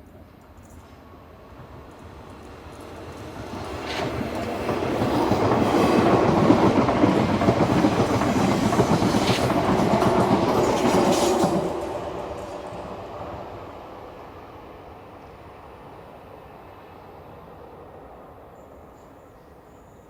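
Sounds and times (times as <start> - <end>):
electric train passing: 0.1 - 20.0.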